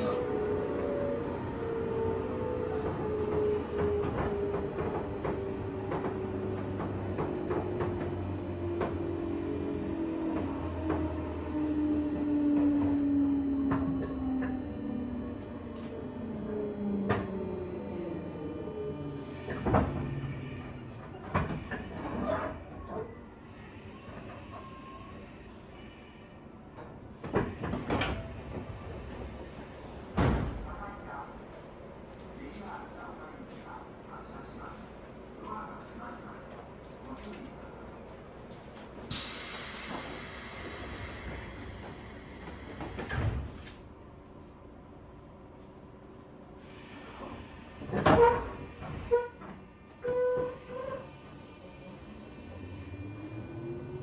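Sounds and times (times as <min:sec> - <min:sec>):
train doors thudding shut: 0:30.1 - 0:30.9
hiss of air: 0:39.1 - 0:43.1.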